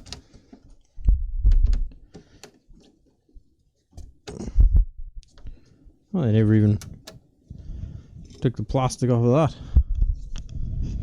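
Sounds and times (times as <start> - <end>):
plastic radio handling thuds and clicks: 0.0 - 0.6, 1.6 - 3.0, 6.8 - 7.3.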